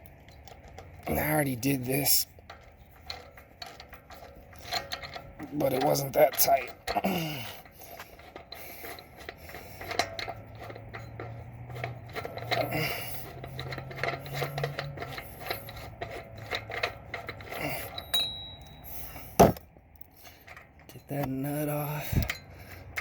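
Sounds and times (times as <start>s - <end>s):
metal-on-metal scraping: 0.0s - 23.0s
socket wrench clicking: 7.6s - 18.8s.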